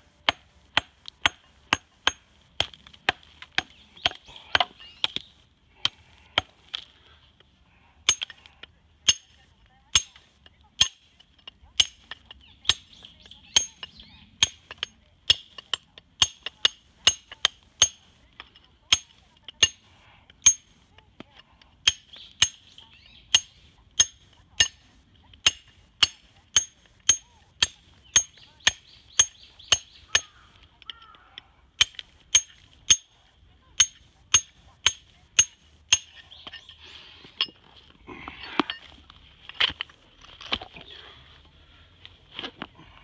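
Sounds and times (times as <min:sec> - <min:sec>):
hammer ringing on stone: 0:20.4 - 0:20.7, 0:23.3 - 0:24.8, 0:25.4 - 0:30.4, 0:33.8 - 0:36.2.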